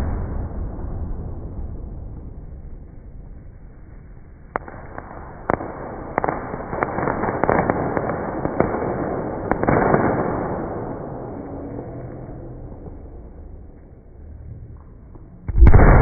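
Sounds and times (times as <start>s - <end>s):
fireworks bangs and crackling: 0.0s - 11.9s, 15.5s - 16.0s.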